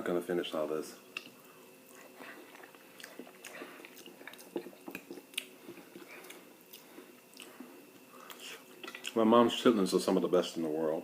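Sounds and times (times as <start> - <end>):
mouth smacks and clicks: 1.2 - 7.5
person chewing: 1.2 - 9.2.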